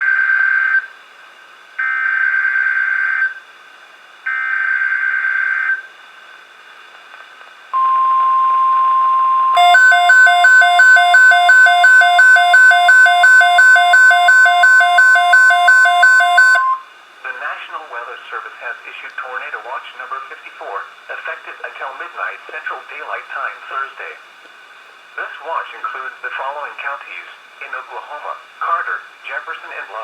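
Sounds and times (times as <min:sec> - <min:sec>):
alternating high-low beeping alarm: 0:07.8 - 0:16.8
steady alarm tone: 0:07.8 - 0:16.8.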